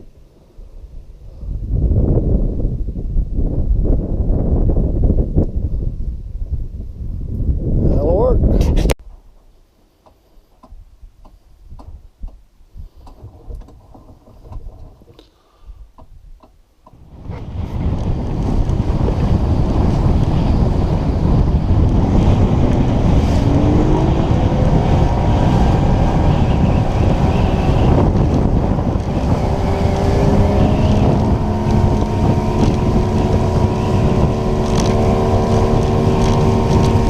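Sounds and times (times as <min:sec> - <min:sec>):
wind noise on microphone: 0:00.0 - 0:09.1, 0:10.6 - 0:37.0
outboard motor running: 0:17.3 - 0:37.0.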